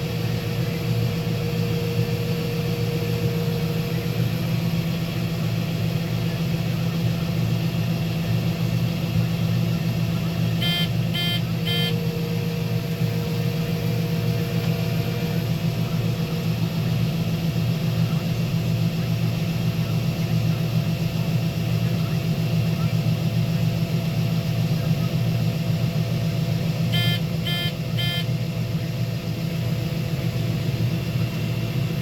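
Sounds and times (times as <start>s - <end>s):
combine harvester running: 0.0s - 32.0s
short electronic beeps: 10.6s - 12.0s, 26.9s - 28.3s.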